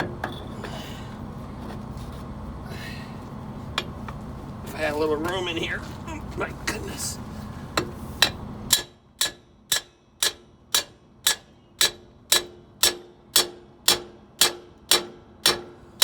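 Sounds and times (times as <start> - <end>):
hammer striking metal tool: 8.2 - 15.7.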